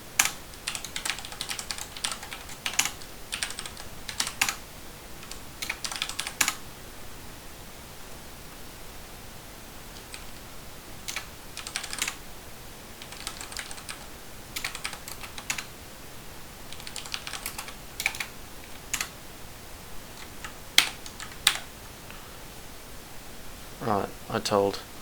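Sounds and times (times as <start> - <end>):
typing on computer keyboard: 0.2 - 4.6, 5.2 - 6.6, 10.0 - 10.4, 11.1 - 12.2, 13.0 - 15.7, 16.7 - 19.1, 20.2 - 21.7.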